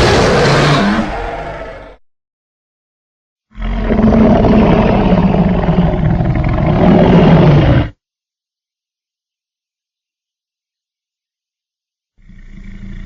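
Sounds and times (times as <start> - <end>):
deep growling dinosaur roar: 0.0 - 2.0, 3.5 - 7.9.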